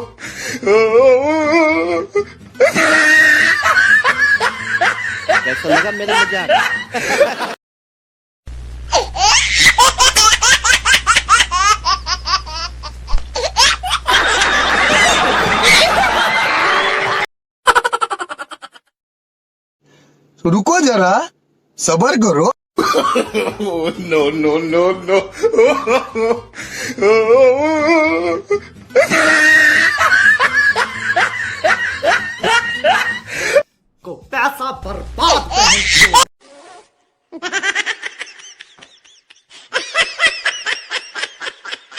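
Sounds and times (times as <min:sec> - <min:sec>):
high-pitched laughter: 0:02.6 - 0:07.5, 0:08.9 - 0:12.7, 0:13.4 - 0:18.9, 0:29.0 - 0:33.3, 0:35.2 - 0:36.3, 0:37.4 - 0:41.9.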